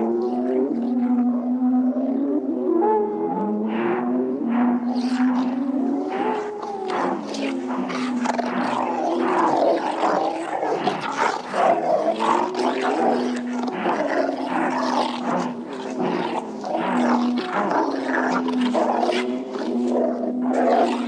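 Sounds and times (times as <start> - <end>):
dogs howling: 1.8 - 21.0
dogs snarling: 5.3 - 21.0.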